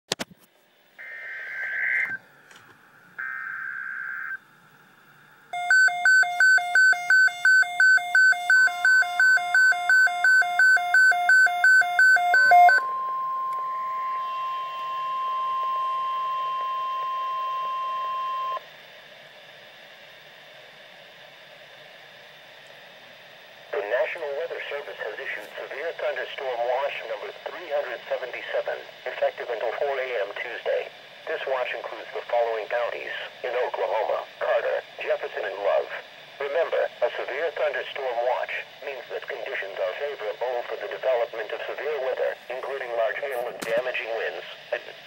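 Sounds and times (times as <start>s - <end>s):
radio hiss: 0.9s - 4.4s, 13.6s - 45.0s
steady alarm tone: 3.2s - 4.4s, 5.5s - 18.6s
rapid electronic beeping: 5.6s - 18.6s.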